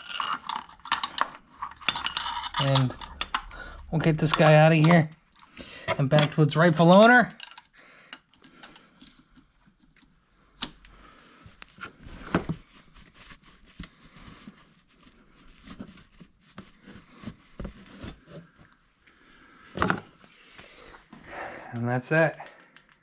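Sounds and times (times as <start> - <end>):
hand tools clinking and knocking: 0.0 - 9.0.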